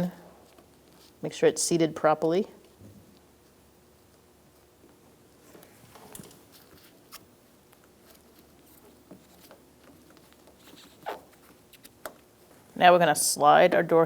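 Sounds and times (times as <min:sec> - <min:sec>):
faint scratching: 0:08.0 - 0:12.0.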